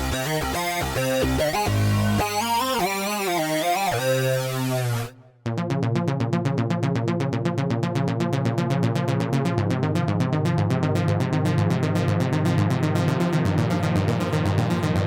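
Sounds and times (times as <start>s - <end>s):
synthesizer pulsing notes: 0.0s - 8.2s
synthesizer bass line: 0.0s - 15.0s.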